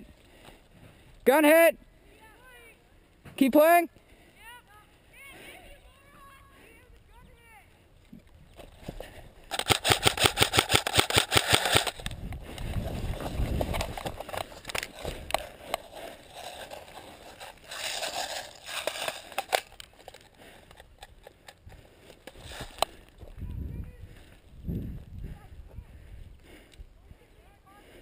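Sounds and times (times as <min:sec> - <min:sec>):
rustling: 0:07.7 - 0:23.4
airsoft gun full-auto burst: 0:09.5 - 0:12.1.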